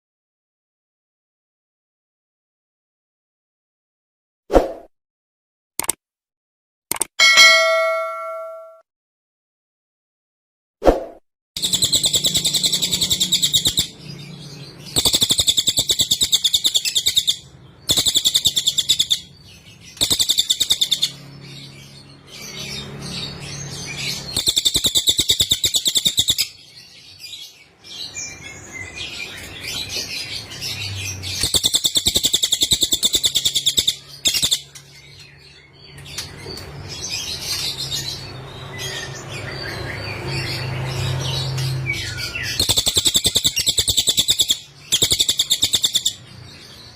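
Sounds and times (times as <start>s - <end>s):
bird chirping softly: 11.6s - 46.9s.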